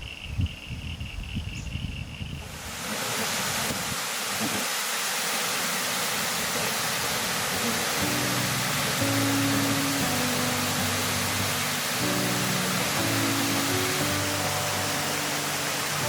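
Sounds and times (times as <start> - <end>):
waterfall rushing: 2.5 - 16.0
music: 7.6 - 16.0.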